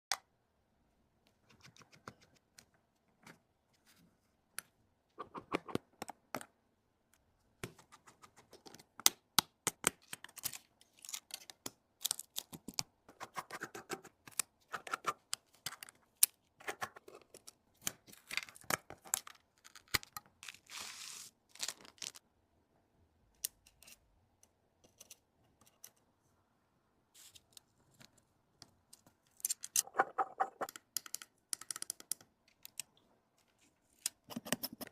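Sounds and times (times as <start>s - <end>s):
small tools clicking and tapping: 30.6s - 33.0s.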